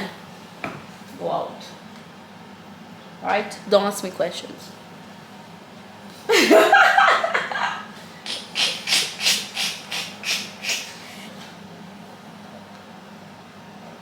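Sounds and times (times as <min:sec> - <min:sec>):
person laughing: 0:06.3 - 0:10.2.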